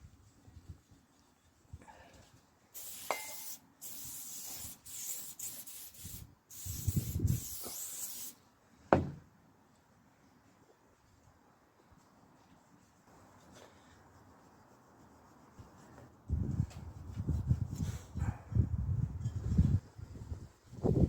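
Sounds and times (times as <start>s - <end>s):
aerosol can spraying: 2.8s - 8.4s
single knock: 8.9s - 9.2s.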